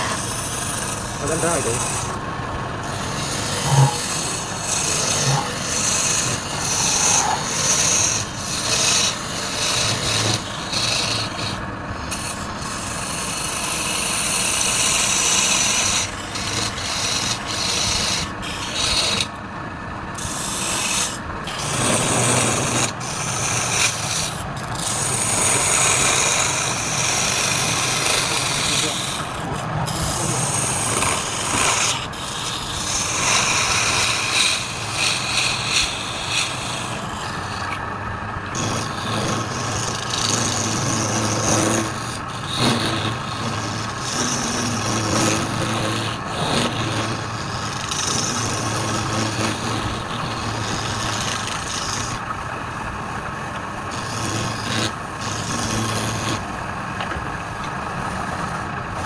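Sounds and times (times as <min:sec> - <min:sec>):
lathe motor hum: 0:00.0 - 0:59.0
tool scraping spinning wood: 0:00.0 - 0:59.0.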